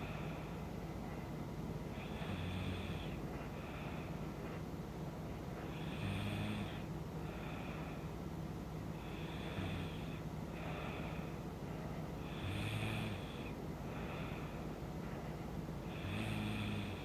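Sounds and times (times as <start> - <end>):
woman snoring: 2.0 - 3.2, 5.7 - 7.6, 9.0 - 11.1, 12.2 - 14.2, 15.9 - 17.0.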